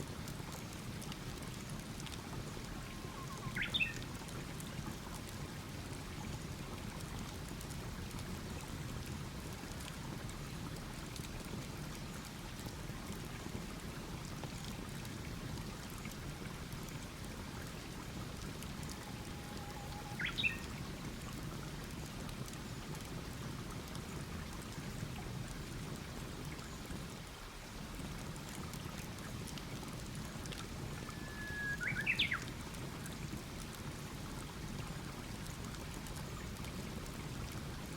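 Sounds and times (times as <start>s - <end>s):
campfire crackling and hissing: 0.1s - 31.2s, 31.8s - 37.9s
bird chirp: 19.6s - 20.7s, 31.1s - 32.4s.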